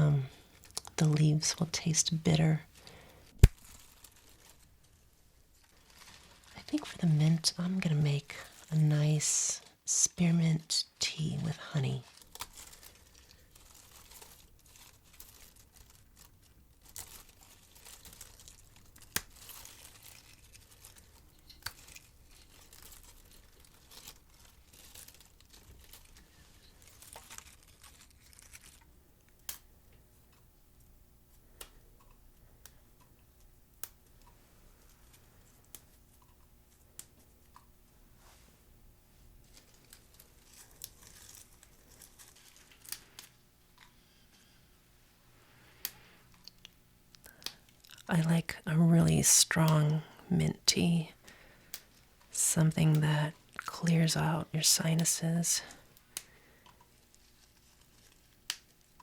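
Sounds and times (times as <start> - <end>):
leaves rustling and tearing: 0.3 - 9.7, 11.5 - 29.7, 39.3 - 44.4, 49.4 - 59.0.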